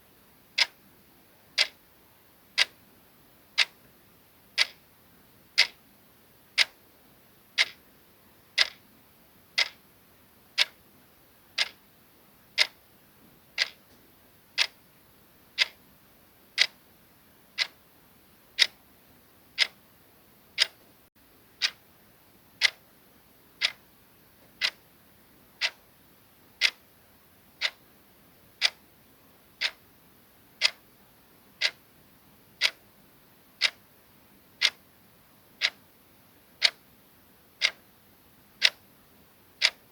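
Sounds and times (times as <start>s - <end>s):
clock ticking: 0.6s - 0.8s, 1.6s - 1.8s, 2.5s - 2.8s, 3.6s - 3.8s, 4.5s - 4.8s, 5.6s - 5.8s, 6.6s - 6.8s, 7.6s - 7.8s, 8.6s - 8.8s, 9.6s - 9.8s, 10.6s - 10.8s, 11.6s - 11.8s, 12.6s - 12.8s, 13.6s - 13.9s, 14.6s - 14.8s, 15.6s - 15.8s, 16.6s - 16.8s, 17.6s - 17.8s, 18.6s - 18.8s, 19.6s - 19.8s, 20.6s - 20.8s, 21.6s - 21.8s, 22.6s - 22.8s, 23.6s - 23.8s, 24.6s - 24.8s, 25.6s - 25.8s, 26.6s - 26.8s, 27.6s - 27.8s, 28.6s - 28.8s, 29.6s - 29.8s, 30.6s - 30.8s, 31.6s - 31.8s, 32.6s - 32.8s, 33.6s - 33.8s, 34.6s - 34.8s, 35.6s - 35.8s, 36.6s - 36.8s, 37.6s - 37.8s, 38.6s - 38.8s, 39.6s - 39.9s.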